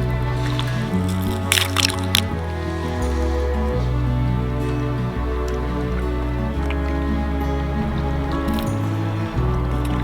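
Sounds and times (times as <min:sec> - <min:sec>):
soft slow instrumental music: 0:00.0 - 0:10.0.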